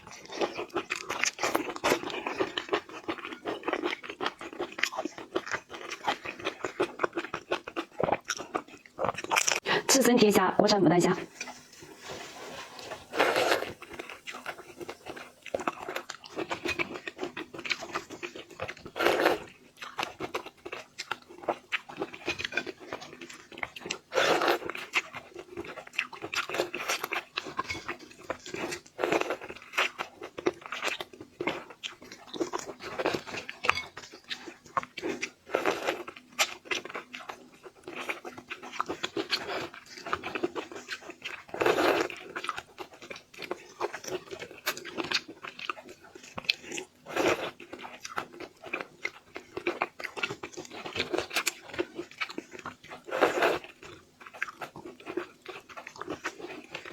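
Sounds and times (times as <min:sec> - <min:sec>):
person chewing and crunching shrimp: 0:00.0 - 0:09.9, 0:11.3 - 0:56.9.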